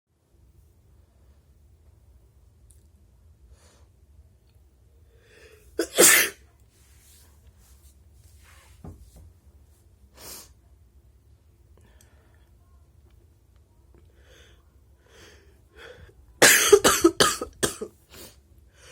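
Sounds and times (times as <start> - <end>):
person sneezing: 5.8 - 6.4
soft breathy sounds: 11.7 - 12.9.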